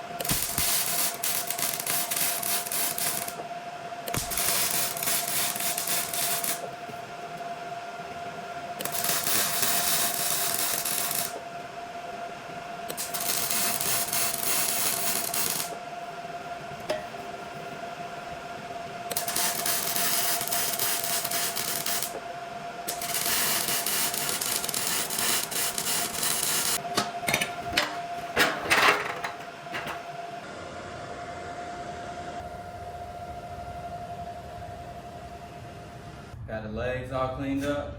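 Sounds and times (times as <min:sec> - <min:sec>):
angle grinder on metal: 0:00.2 - 0:03.4, 0:04.1 - 0:06.7, 0:08.8 - 0:11.4, 0:12.9 - 0:15.7, 0:19.1 - 0:22.2, 0:22.9 - 0:26.8.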